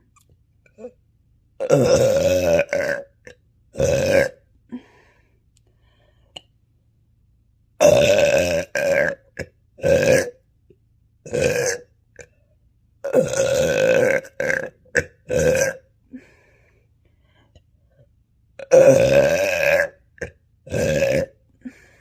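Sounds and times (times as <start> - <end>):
woman burping: 1.6 - 4.4, 7.8 - 10.4, 11.3 - 12.3, 13.0 - 15.9, 18.6 - 21.8.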